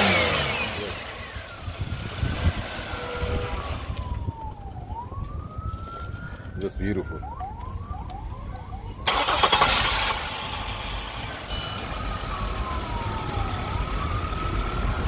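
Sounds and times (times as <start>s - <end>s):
car engine starting and running: 0.0s - 4.8s, 7.9s - 15.0s
siren wailing: 2.8s - 15.0s.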